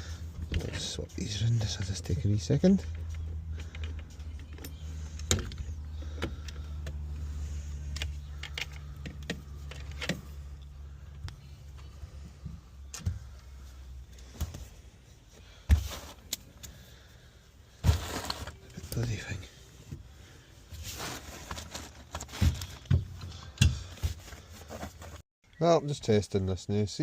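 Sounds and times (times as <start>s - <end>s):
low steady hum: 0.0s - 24.5s
hand tools and metal parts clicking: 2.7s - 11.9s.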